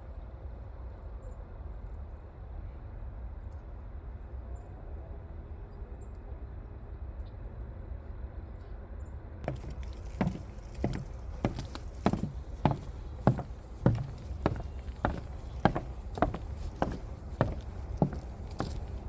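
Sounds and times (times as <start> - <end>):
footsteps of person walking: 9.5 - 19.0.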